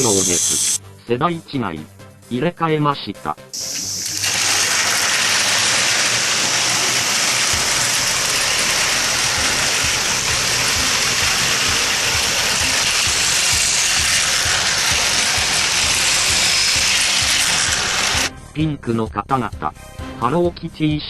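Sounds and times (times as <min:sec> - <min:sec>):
toy train motor whirring: 0:00.0 - 0:00.8, 0:03.6 - 0:18.3.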